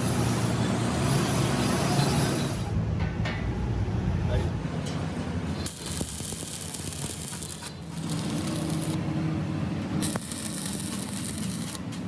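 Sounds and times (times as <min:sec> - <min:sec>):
machinery humming: 0:05.2 - 0:12.0.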